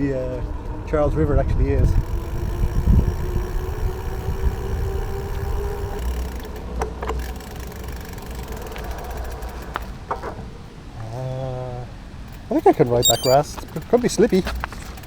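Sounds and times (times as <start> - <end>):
wind rumble on microphone: 0.0 - 7.7
bicycle tyre noise: 2.0 - 10.0.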